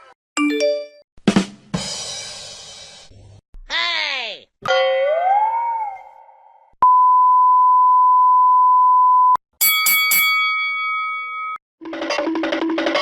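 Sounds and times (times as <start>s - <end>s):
censor bleep: 6.8s - 9.4s
ringing chime: 9.6s - 11.6s.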